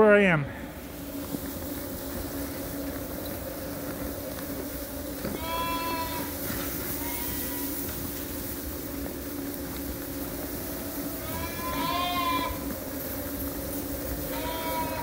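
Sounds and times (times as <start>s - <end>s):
steady low hum: 0.0s - 15.0s
lamb bleating: 5.3s - 8.0s, 11.2s - 12.7s, 14.2s - 15.0s.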